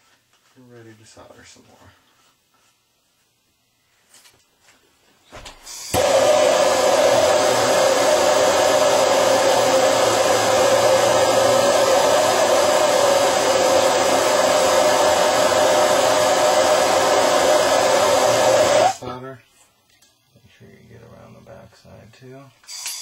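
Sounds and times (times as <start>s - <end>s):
gas torch hissing: 5.6s - 19.0s, 22.6s - 23.0s.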